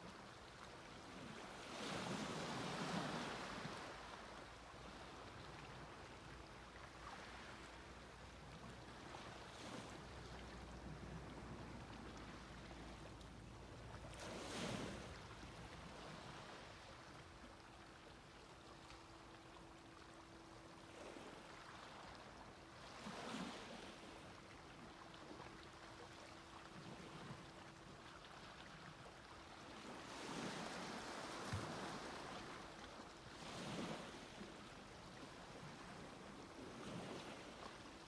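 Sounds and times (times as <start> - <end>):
small waves breaking on beach: 0.0 - 13.2, 13.8 - 17.5, 19.6 - 38.0.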